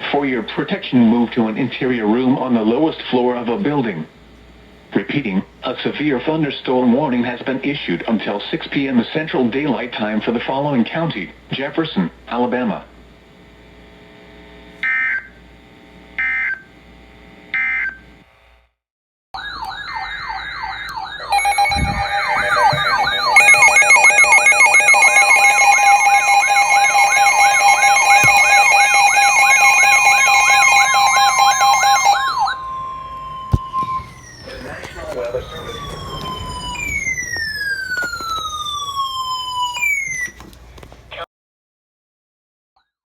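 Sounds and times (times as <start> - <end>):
yelping siren tone: 19.4 - 40.4
steady attention tone: 19.9 - 39.7
data bursts: 20.9 - 38.9.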